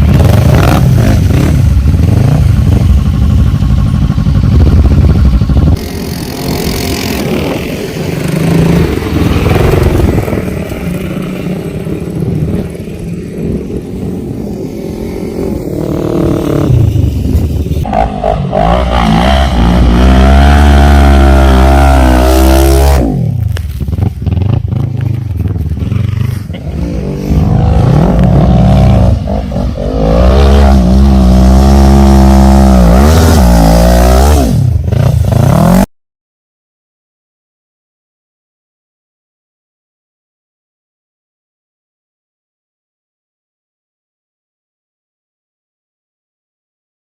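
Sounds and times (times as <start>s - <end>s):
quad bike engine revving: 0.0s - 35.9s.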